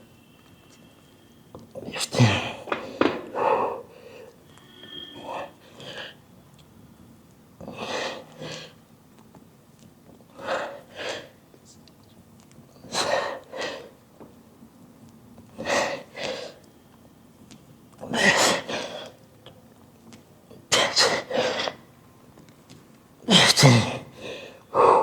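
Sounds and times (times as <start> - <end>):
man breathing hard: 2.7 - 6.2, 24.1 - 25.0.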